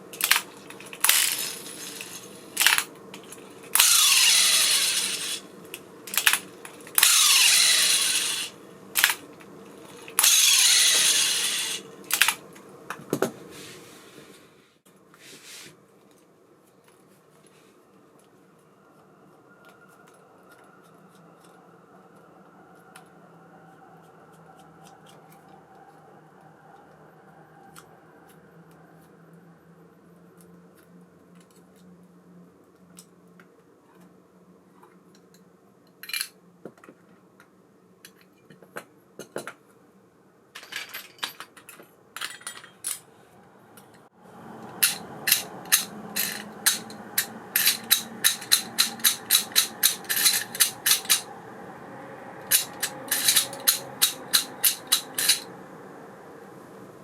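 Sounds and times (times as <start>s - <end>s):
reel whirring with rapid ticking: 3.7s - 5.4s, 7.0s - 9.1s, 10.0s - 12.2s
fishing reel metallic clicks: 44.8s - 51.3s.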